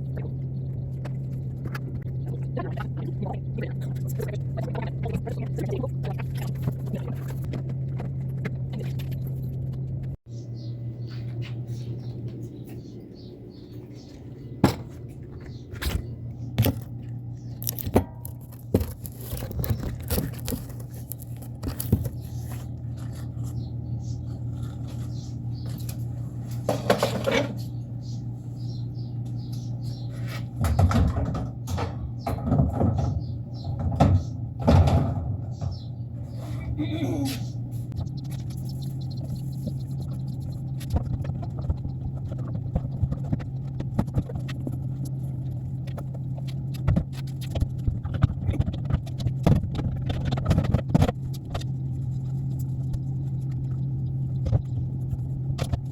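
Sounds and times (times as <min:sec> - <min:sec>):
steady low hum: 0:00.0 - 0:55.9
items clicking and scraping: 0:14.7 - 0:27.8.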